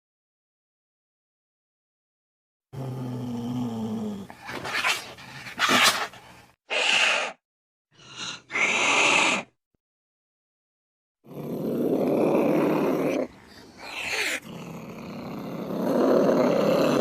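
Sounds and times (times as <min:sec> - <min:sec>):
cat hissing: 0:04.4 - 0:07.4, 0:08.0 - 0:09.6, 0:12.6 - 0:14.9
cat growling: 0:11.2 - 0:17.0.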